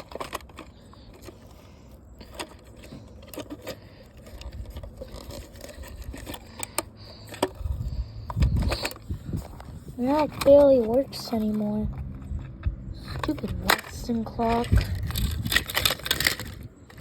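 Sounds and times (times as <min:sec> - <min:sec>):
plastic clock parts clicking and rattling: 0:00.0 - 0:12.5, 0:13.1 - 0:17.0
low rumble: 0:07.5 - 0:17.0.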